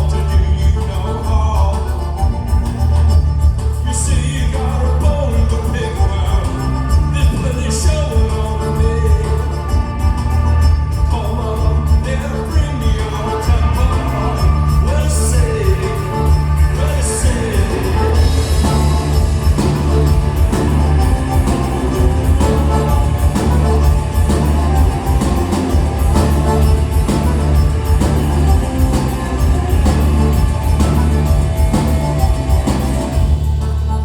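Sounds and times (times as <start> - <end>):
live rock band playing: 0.0 - 34.0
person singing: 3.9 - 10.2, 11.0 - 34.0.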